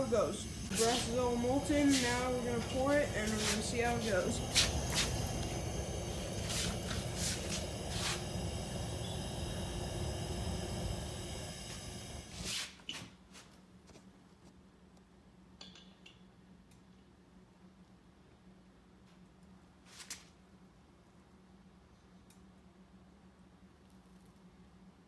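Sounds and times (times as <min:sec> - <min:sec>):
faint steady hum: 0:00.0 - 0:12.5
furnace burner rushing: 0:00.0 - 0:13.0.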